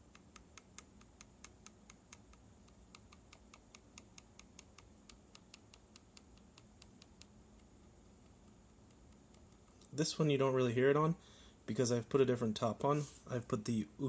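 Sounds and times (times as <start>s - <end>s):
faint ticks of keyboard keys tapping: 0.0s - 10.0s.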